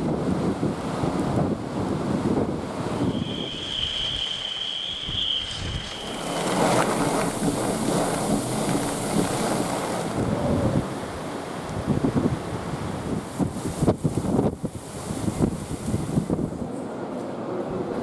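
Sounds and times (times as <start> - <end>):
hiss of driving rain: 0.0 - 16.8
gusty wind buffeting microphone: 0.0 - 18.0
high steady whistle: 2.9 - 7.4.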